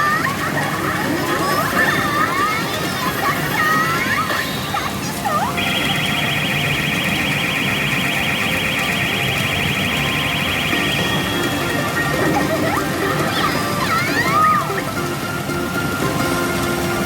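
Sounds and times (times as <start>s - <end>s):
machine background noise: 0.0s - 17.0s
high warbling electronic beep: 5.4s - 12.9s.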